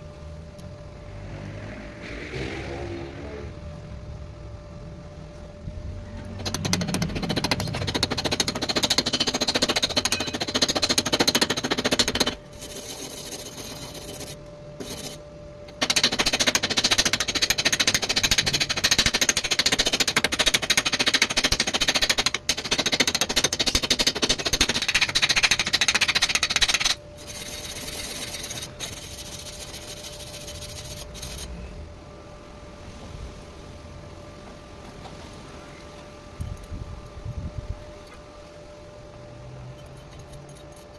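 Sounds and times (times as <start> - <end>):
faint steady hum: 0.0 - 40.9
welding arc crackling: 6.2 - 31.5.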